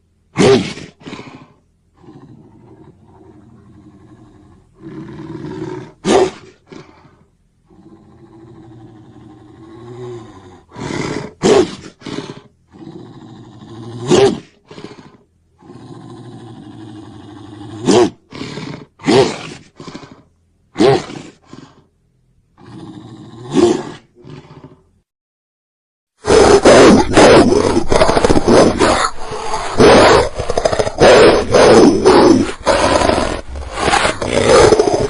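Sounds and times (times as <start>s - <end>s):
creature growling and roaring: 7.7s - 20.2s, 26.2s - 35.0s.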